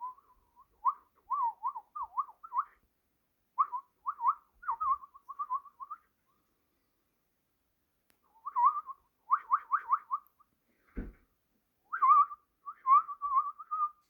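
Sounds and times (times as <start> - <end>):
soft thump: 10.9 - 11.2.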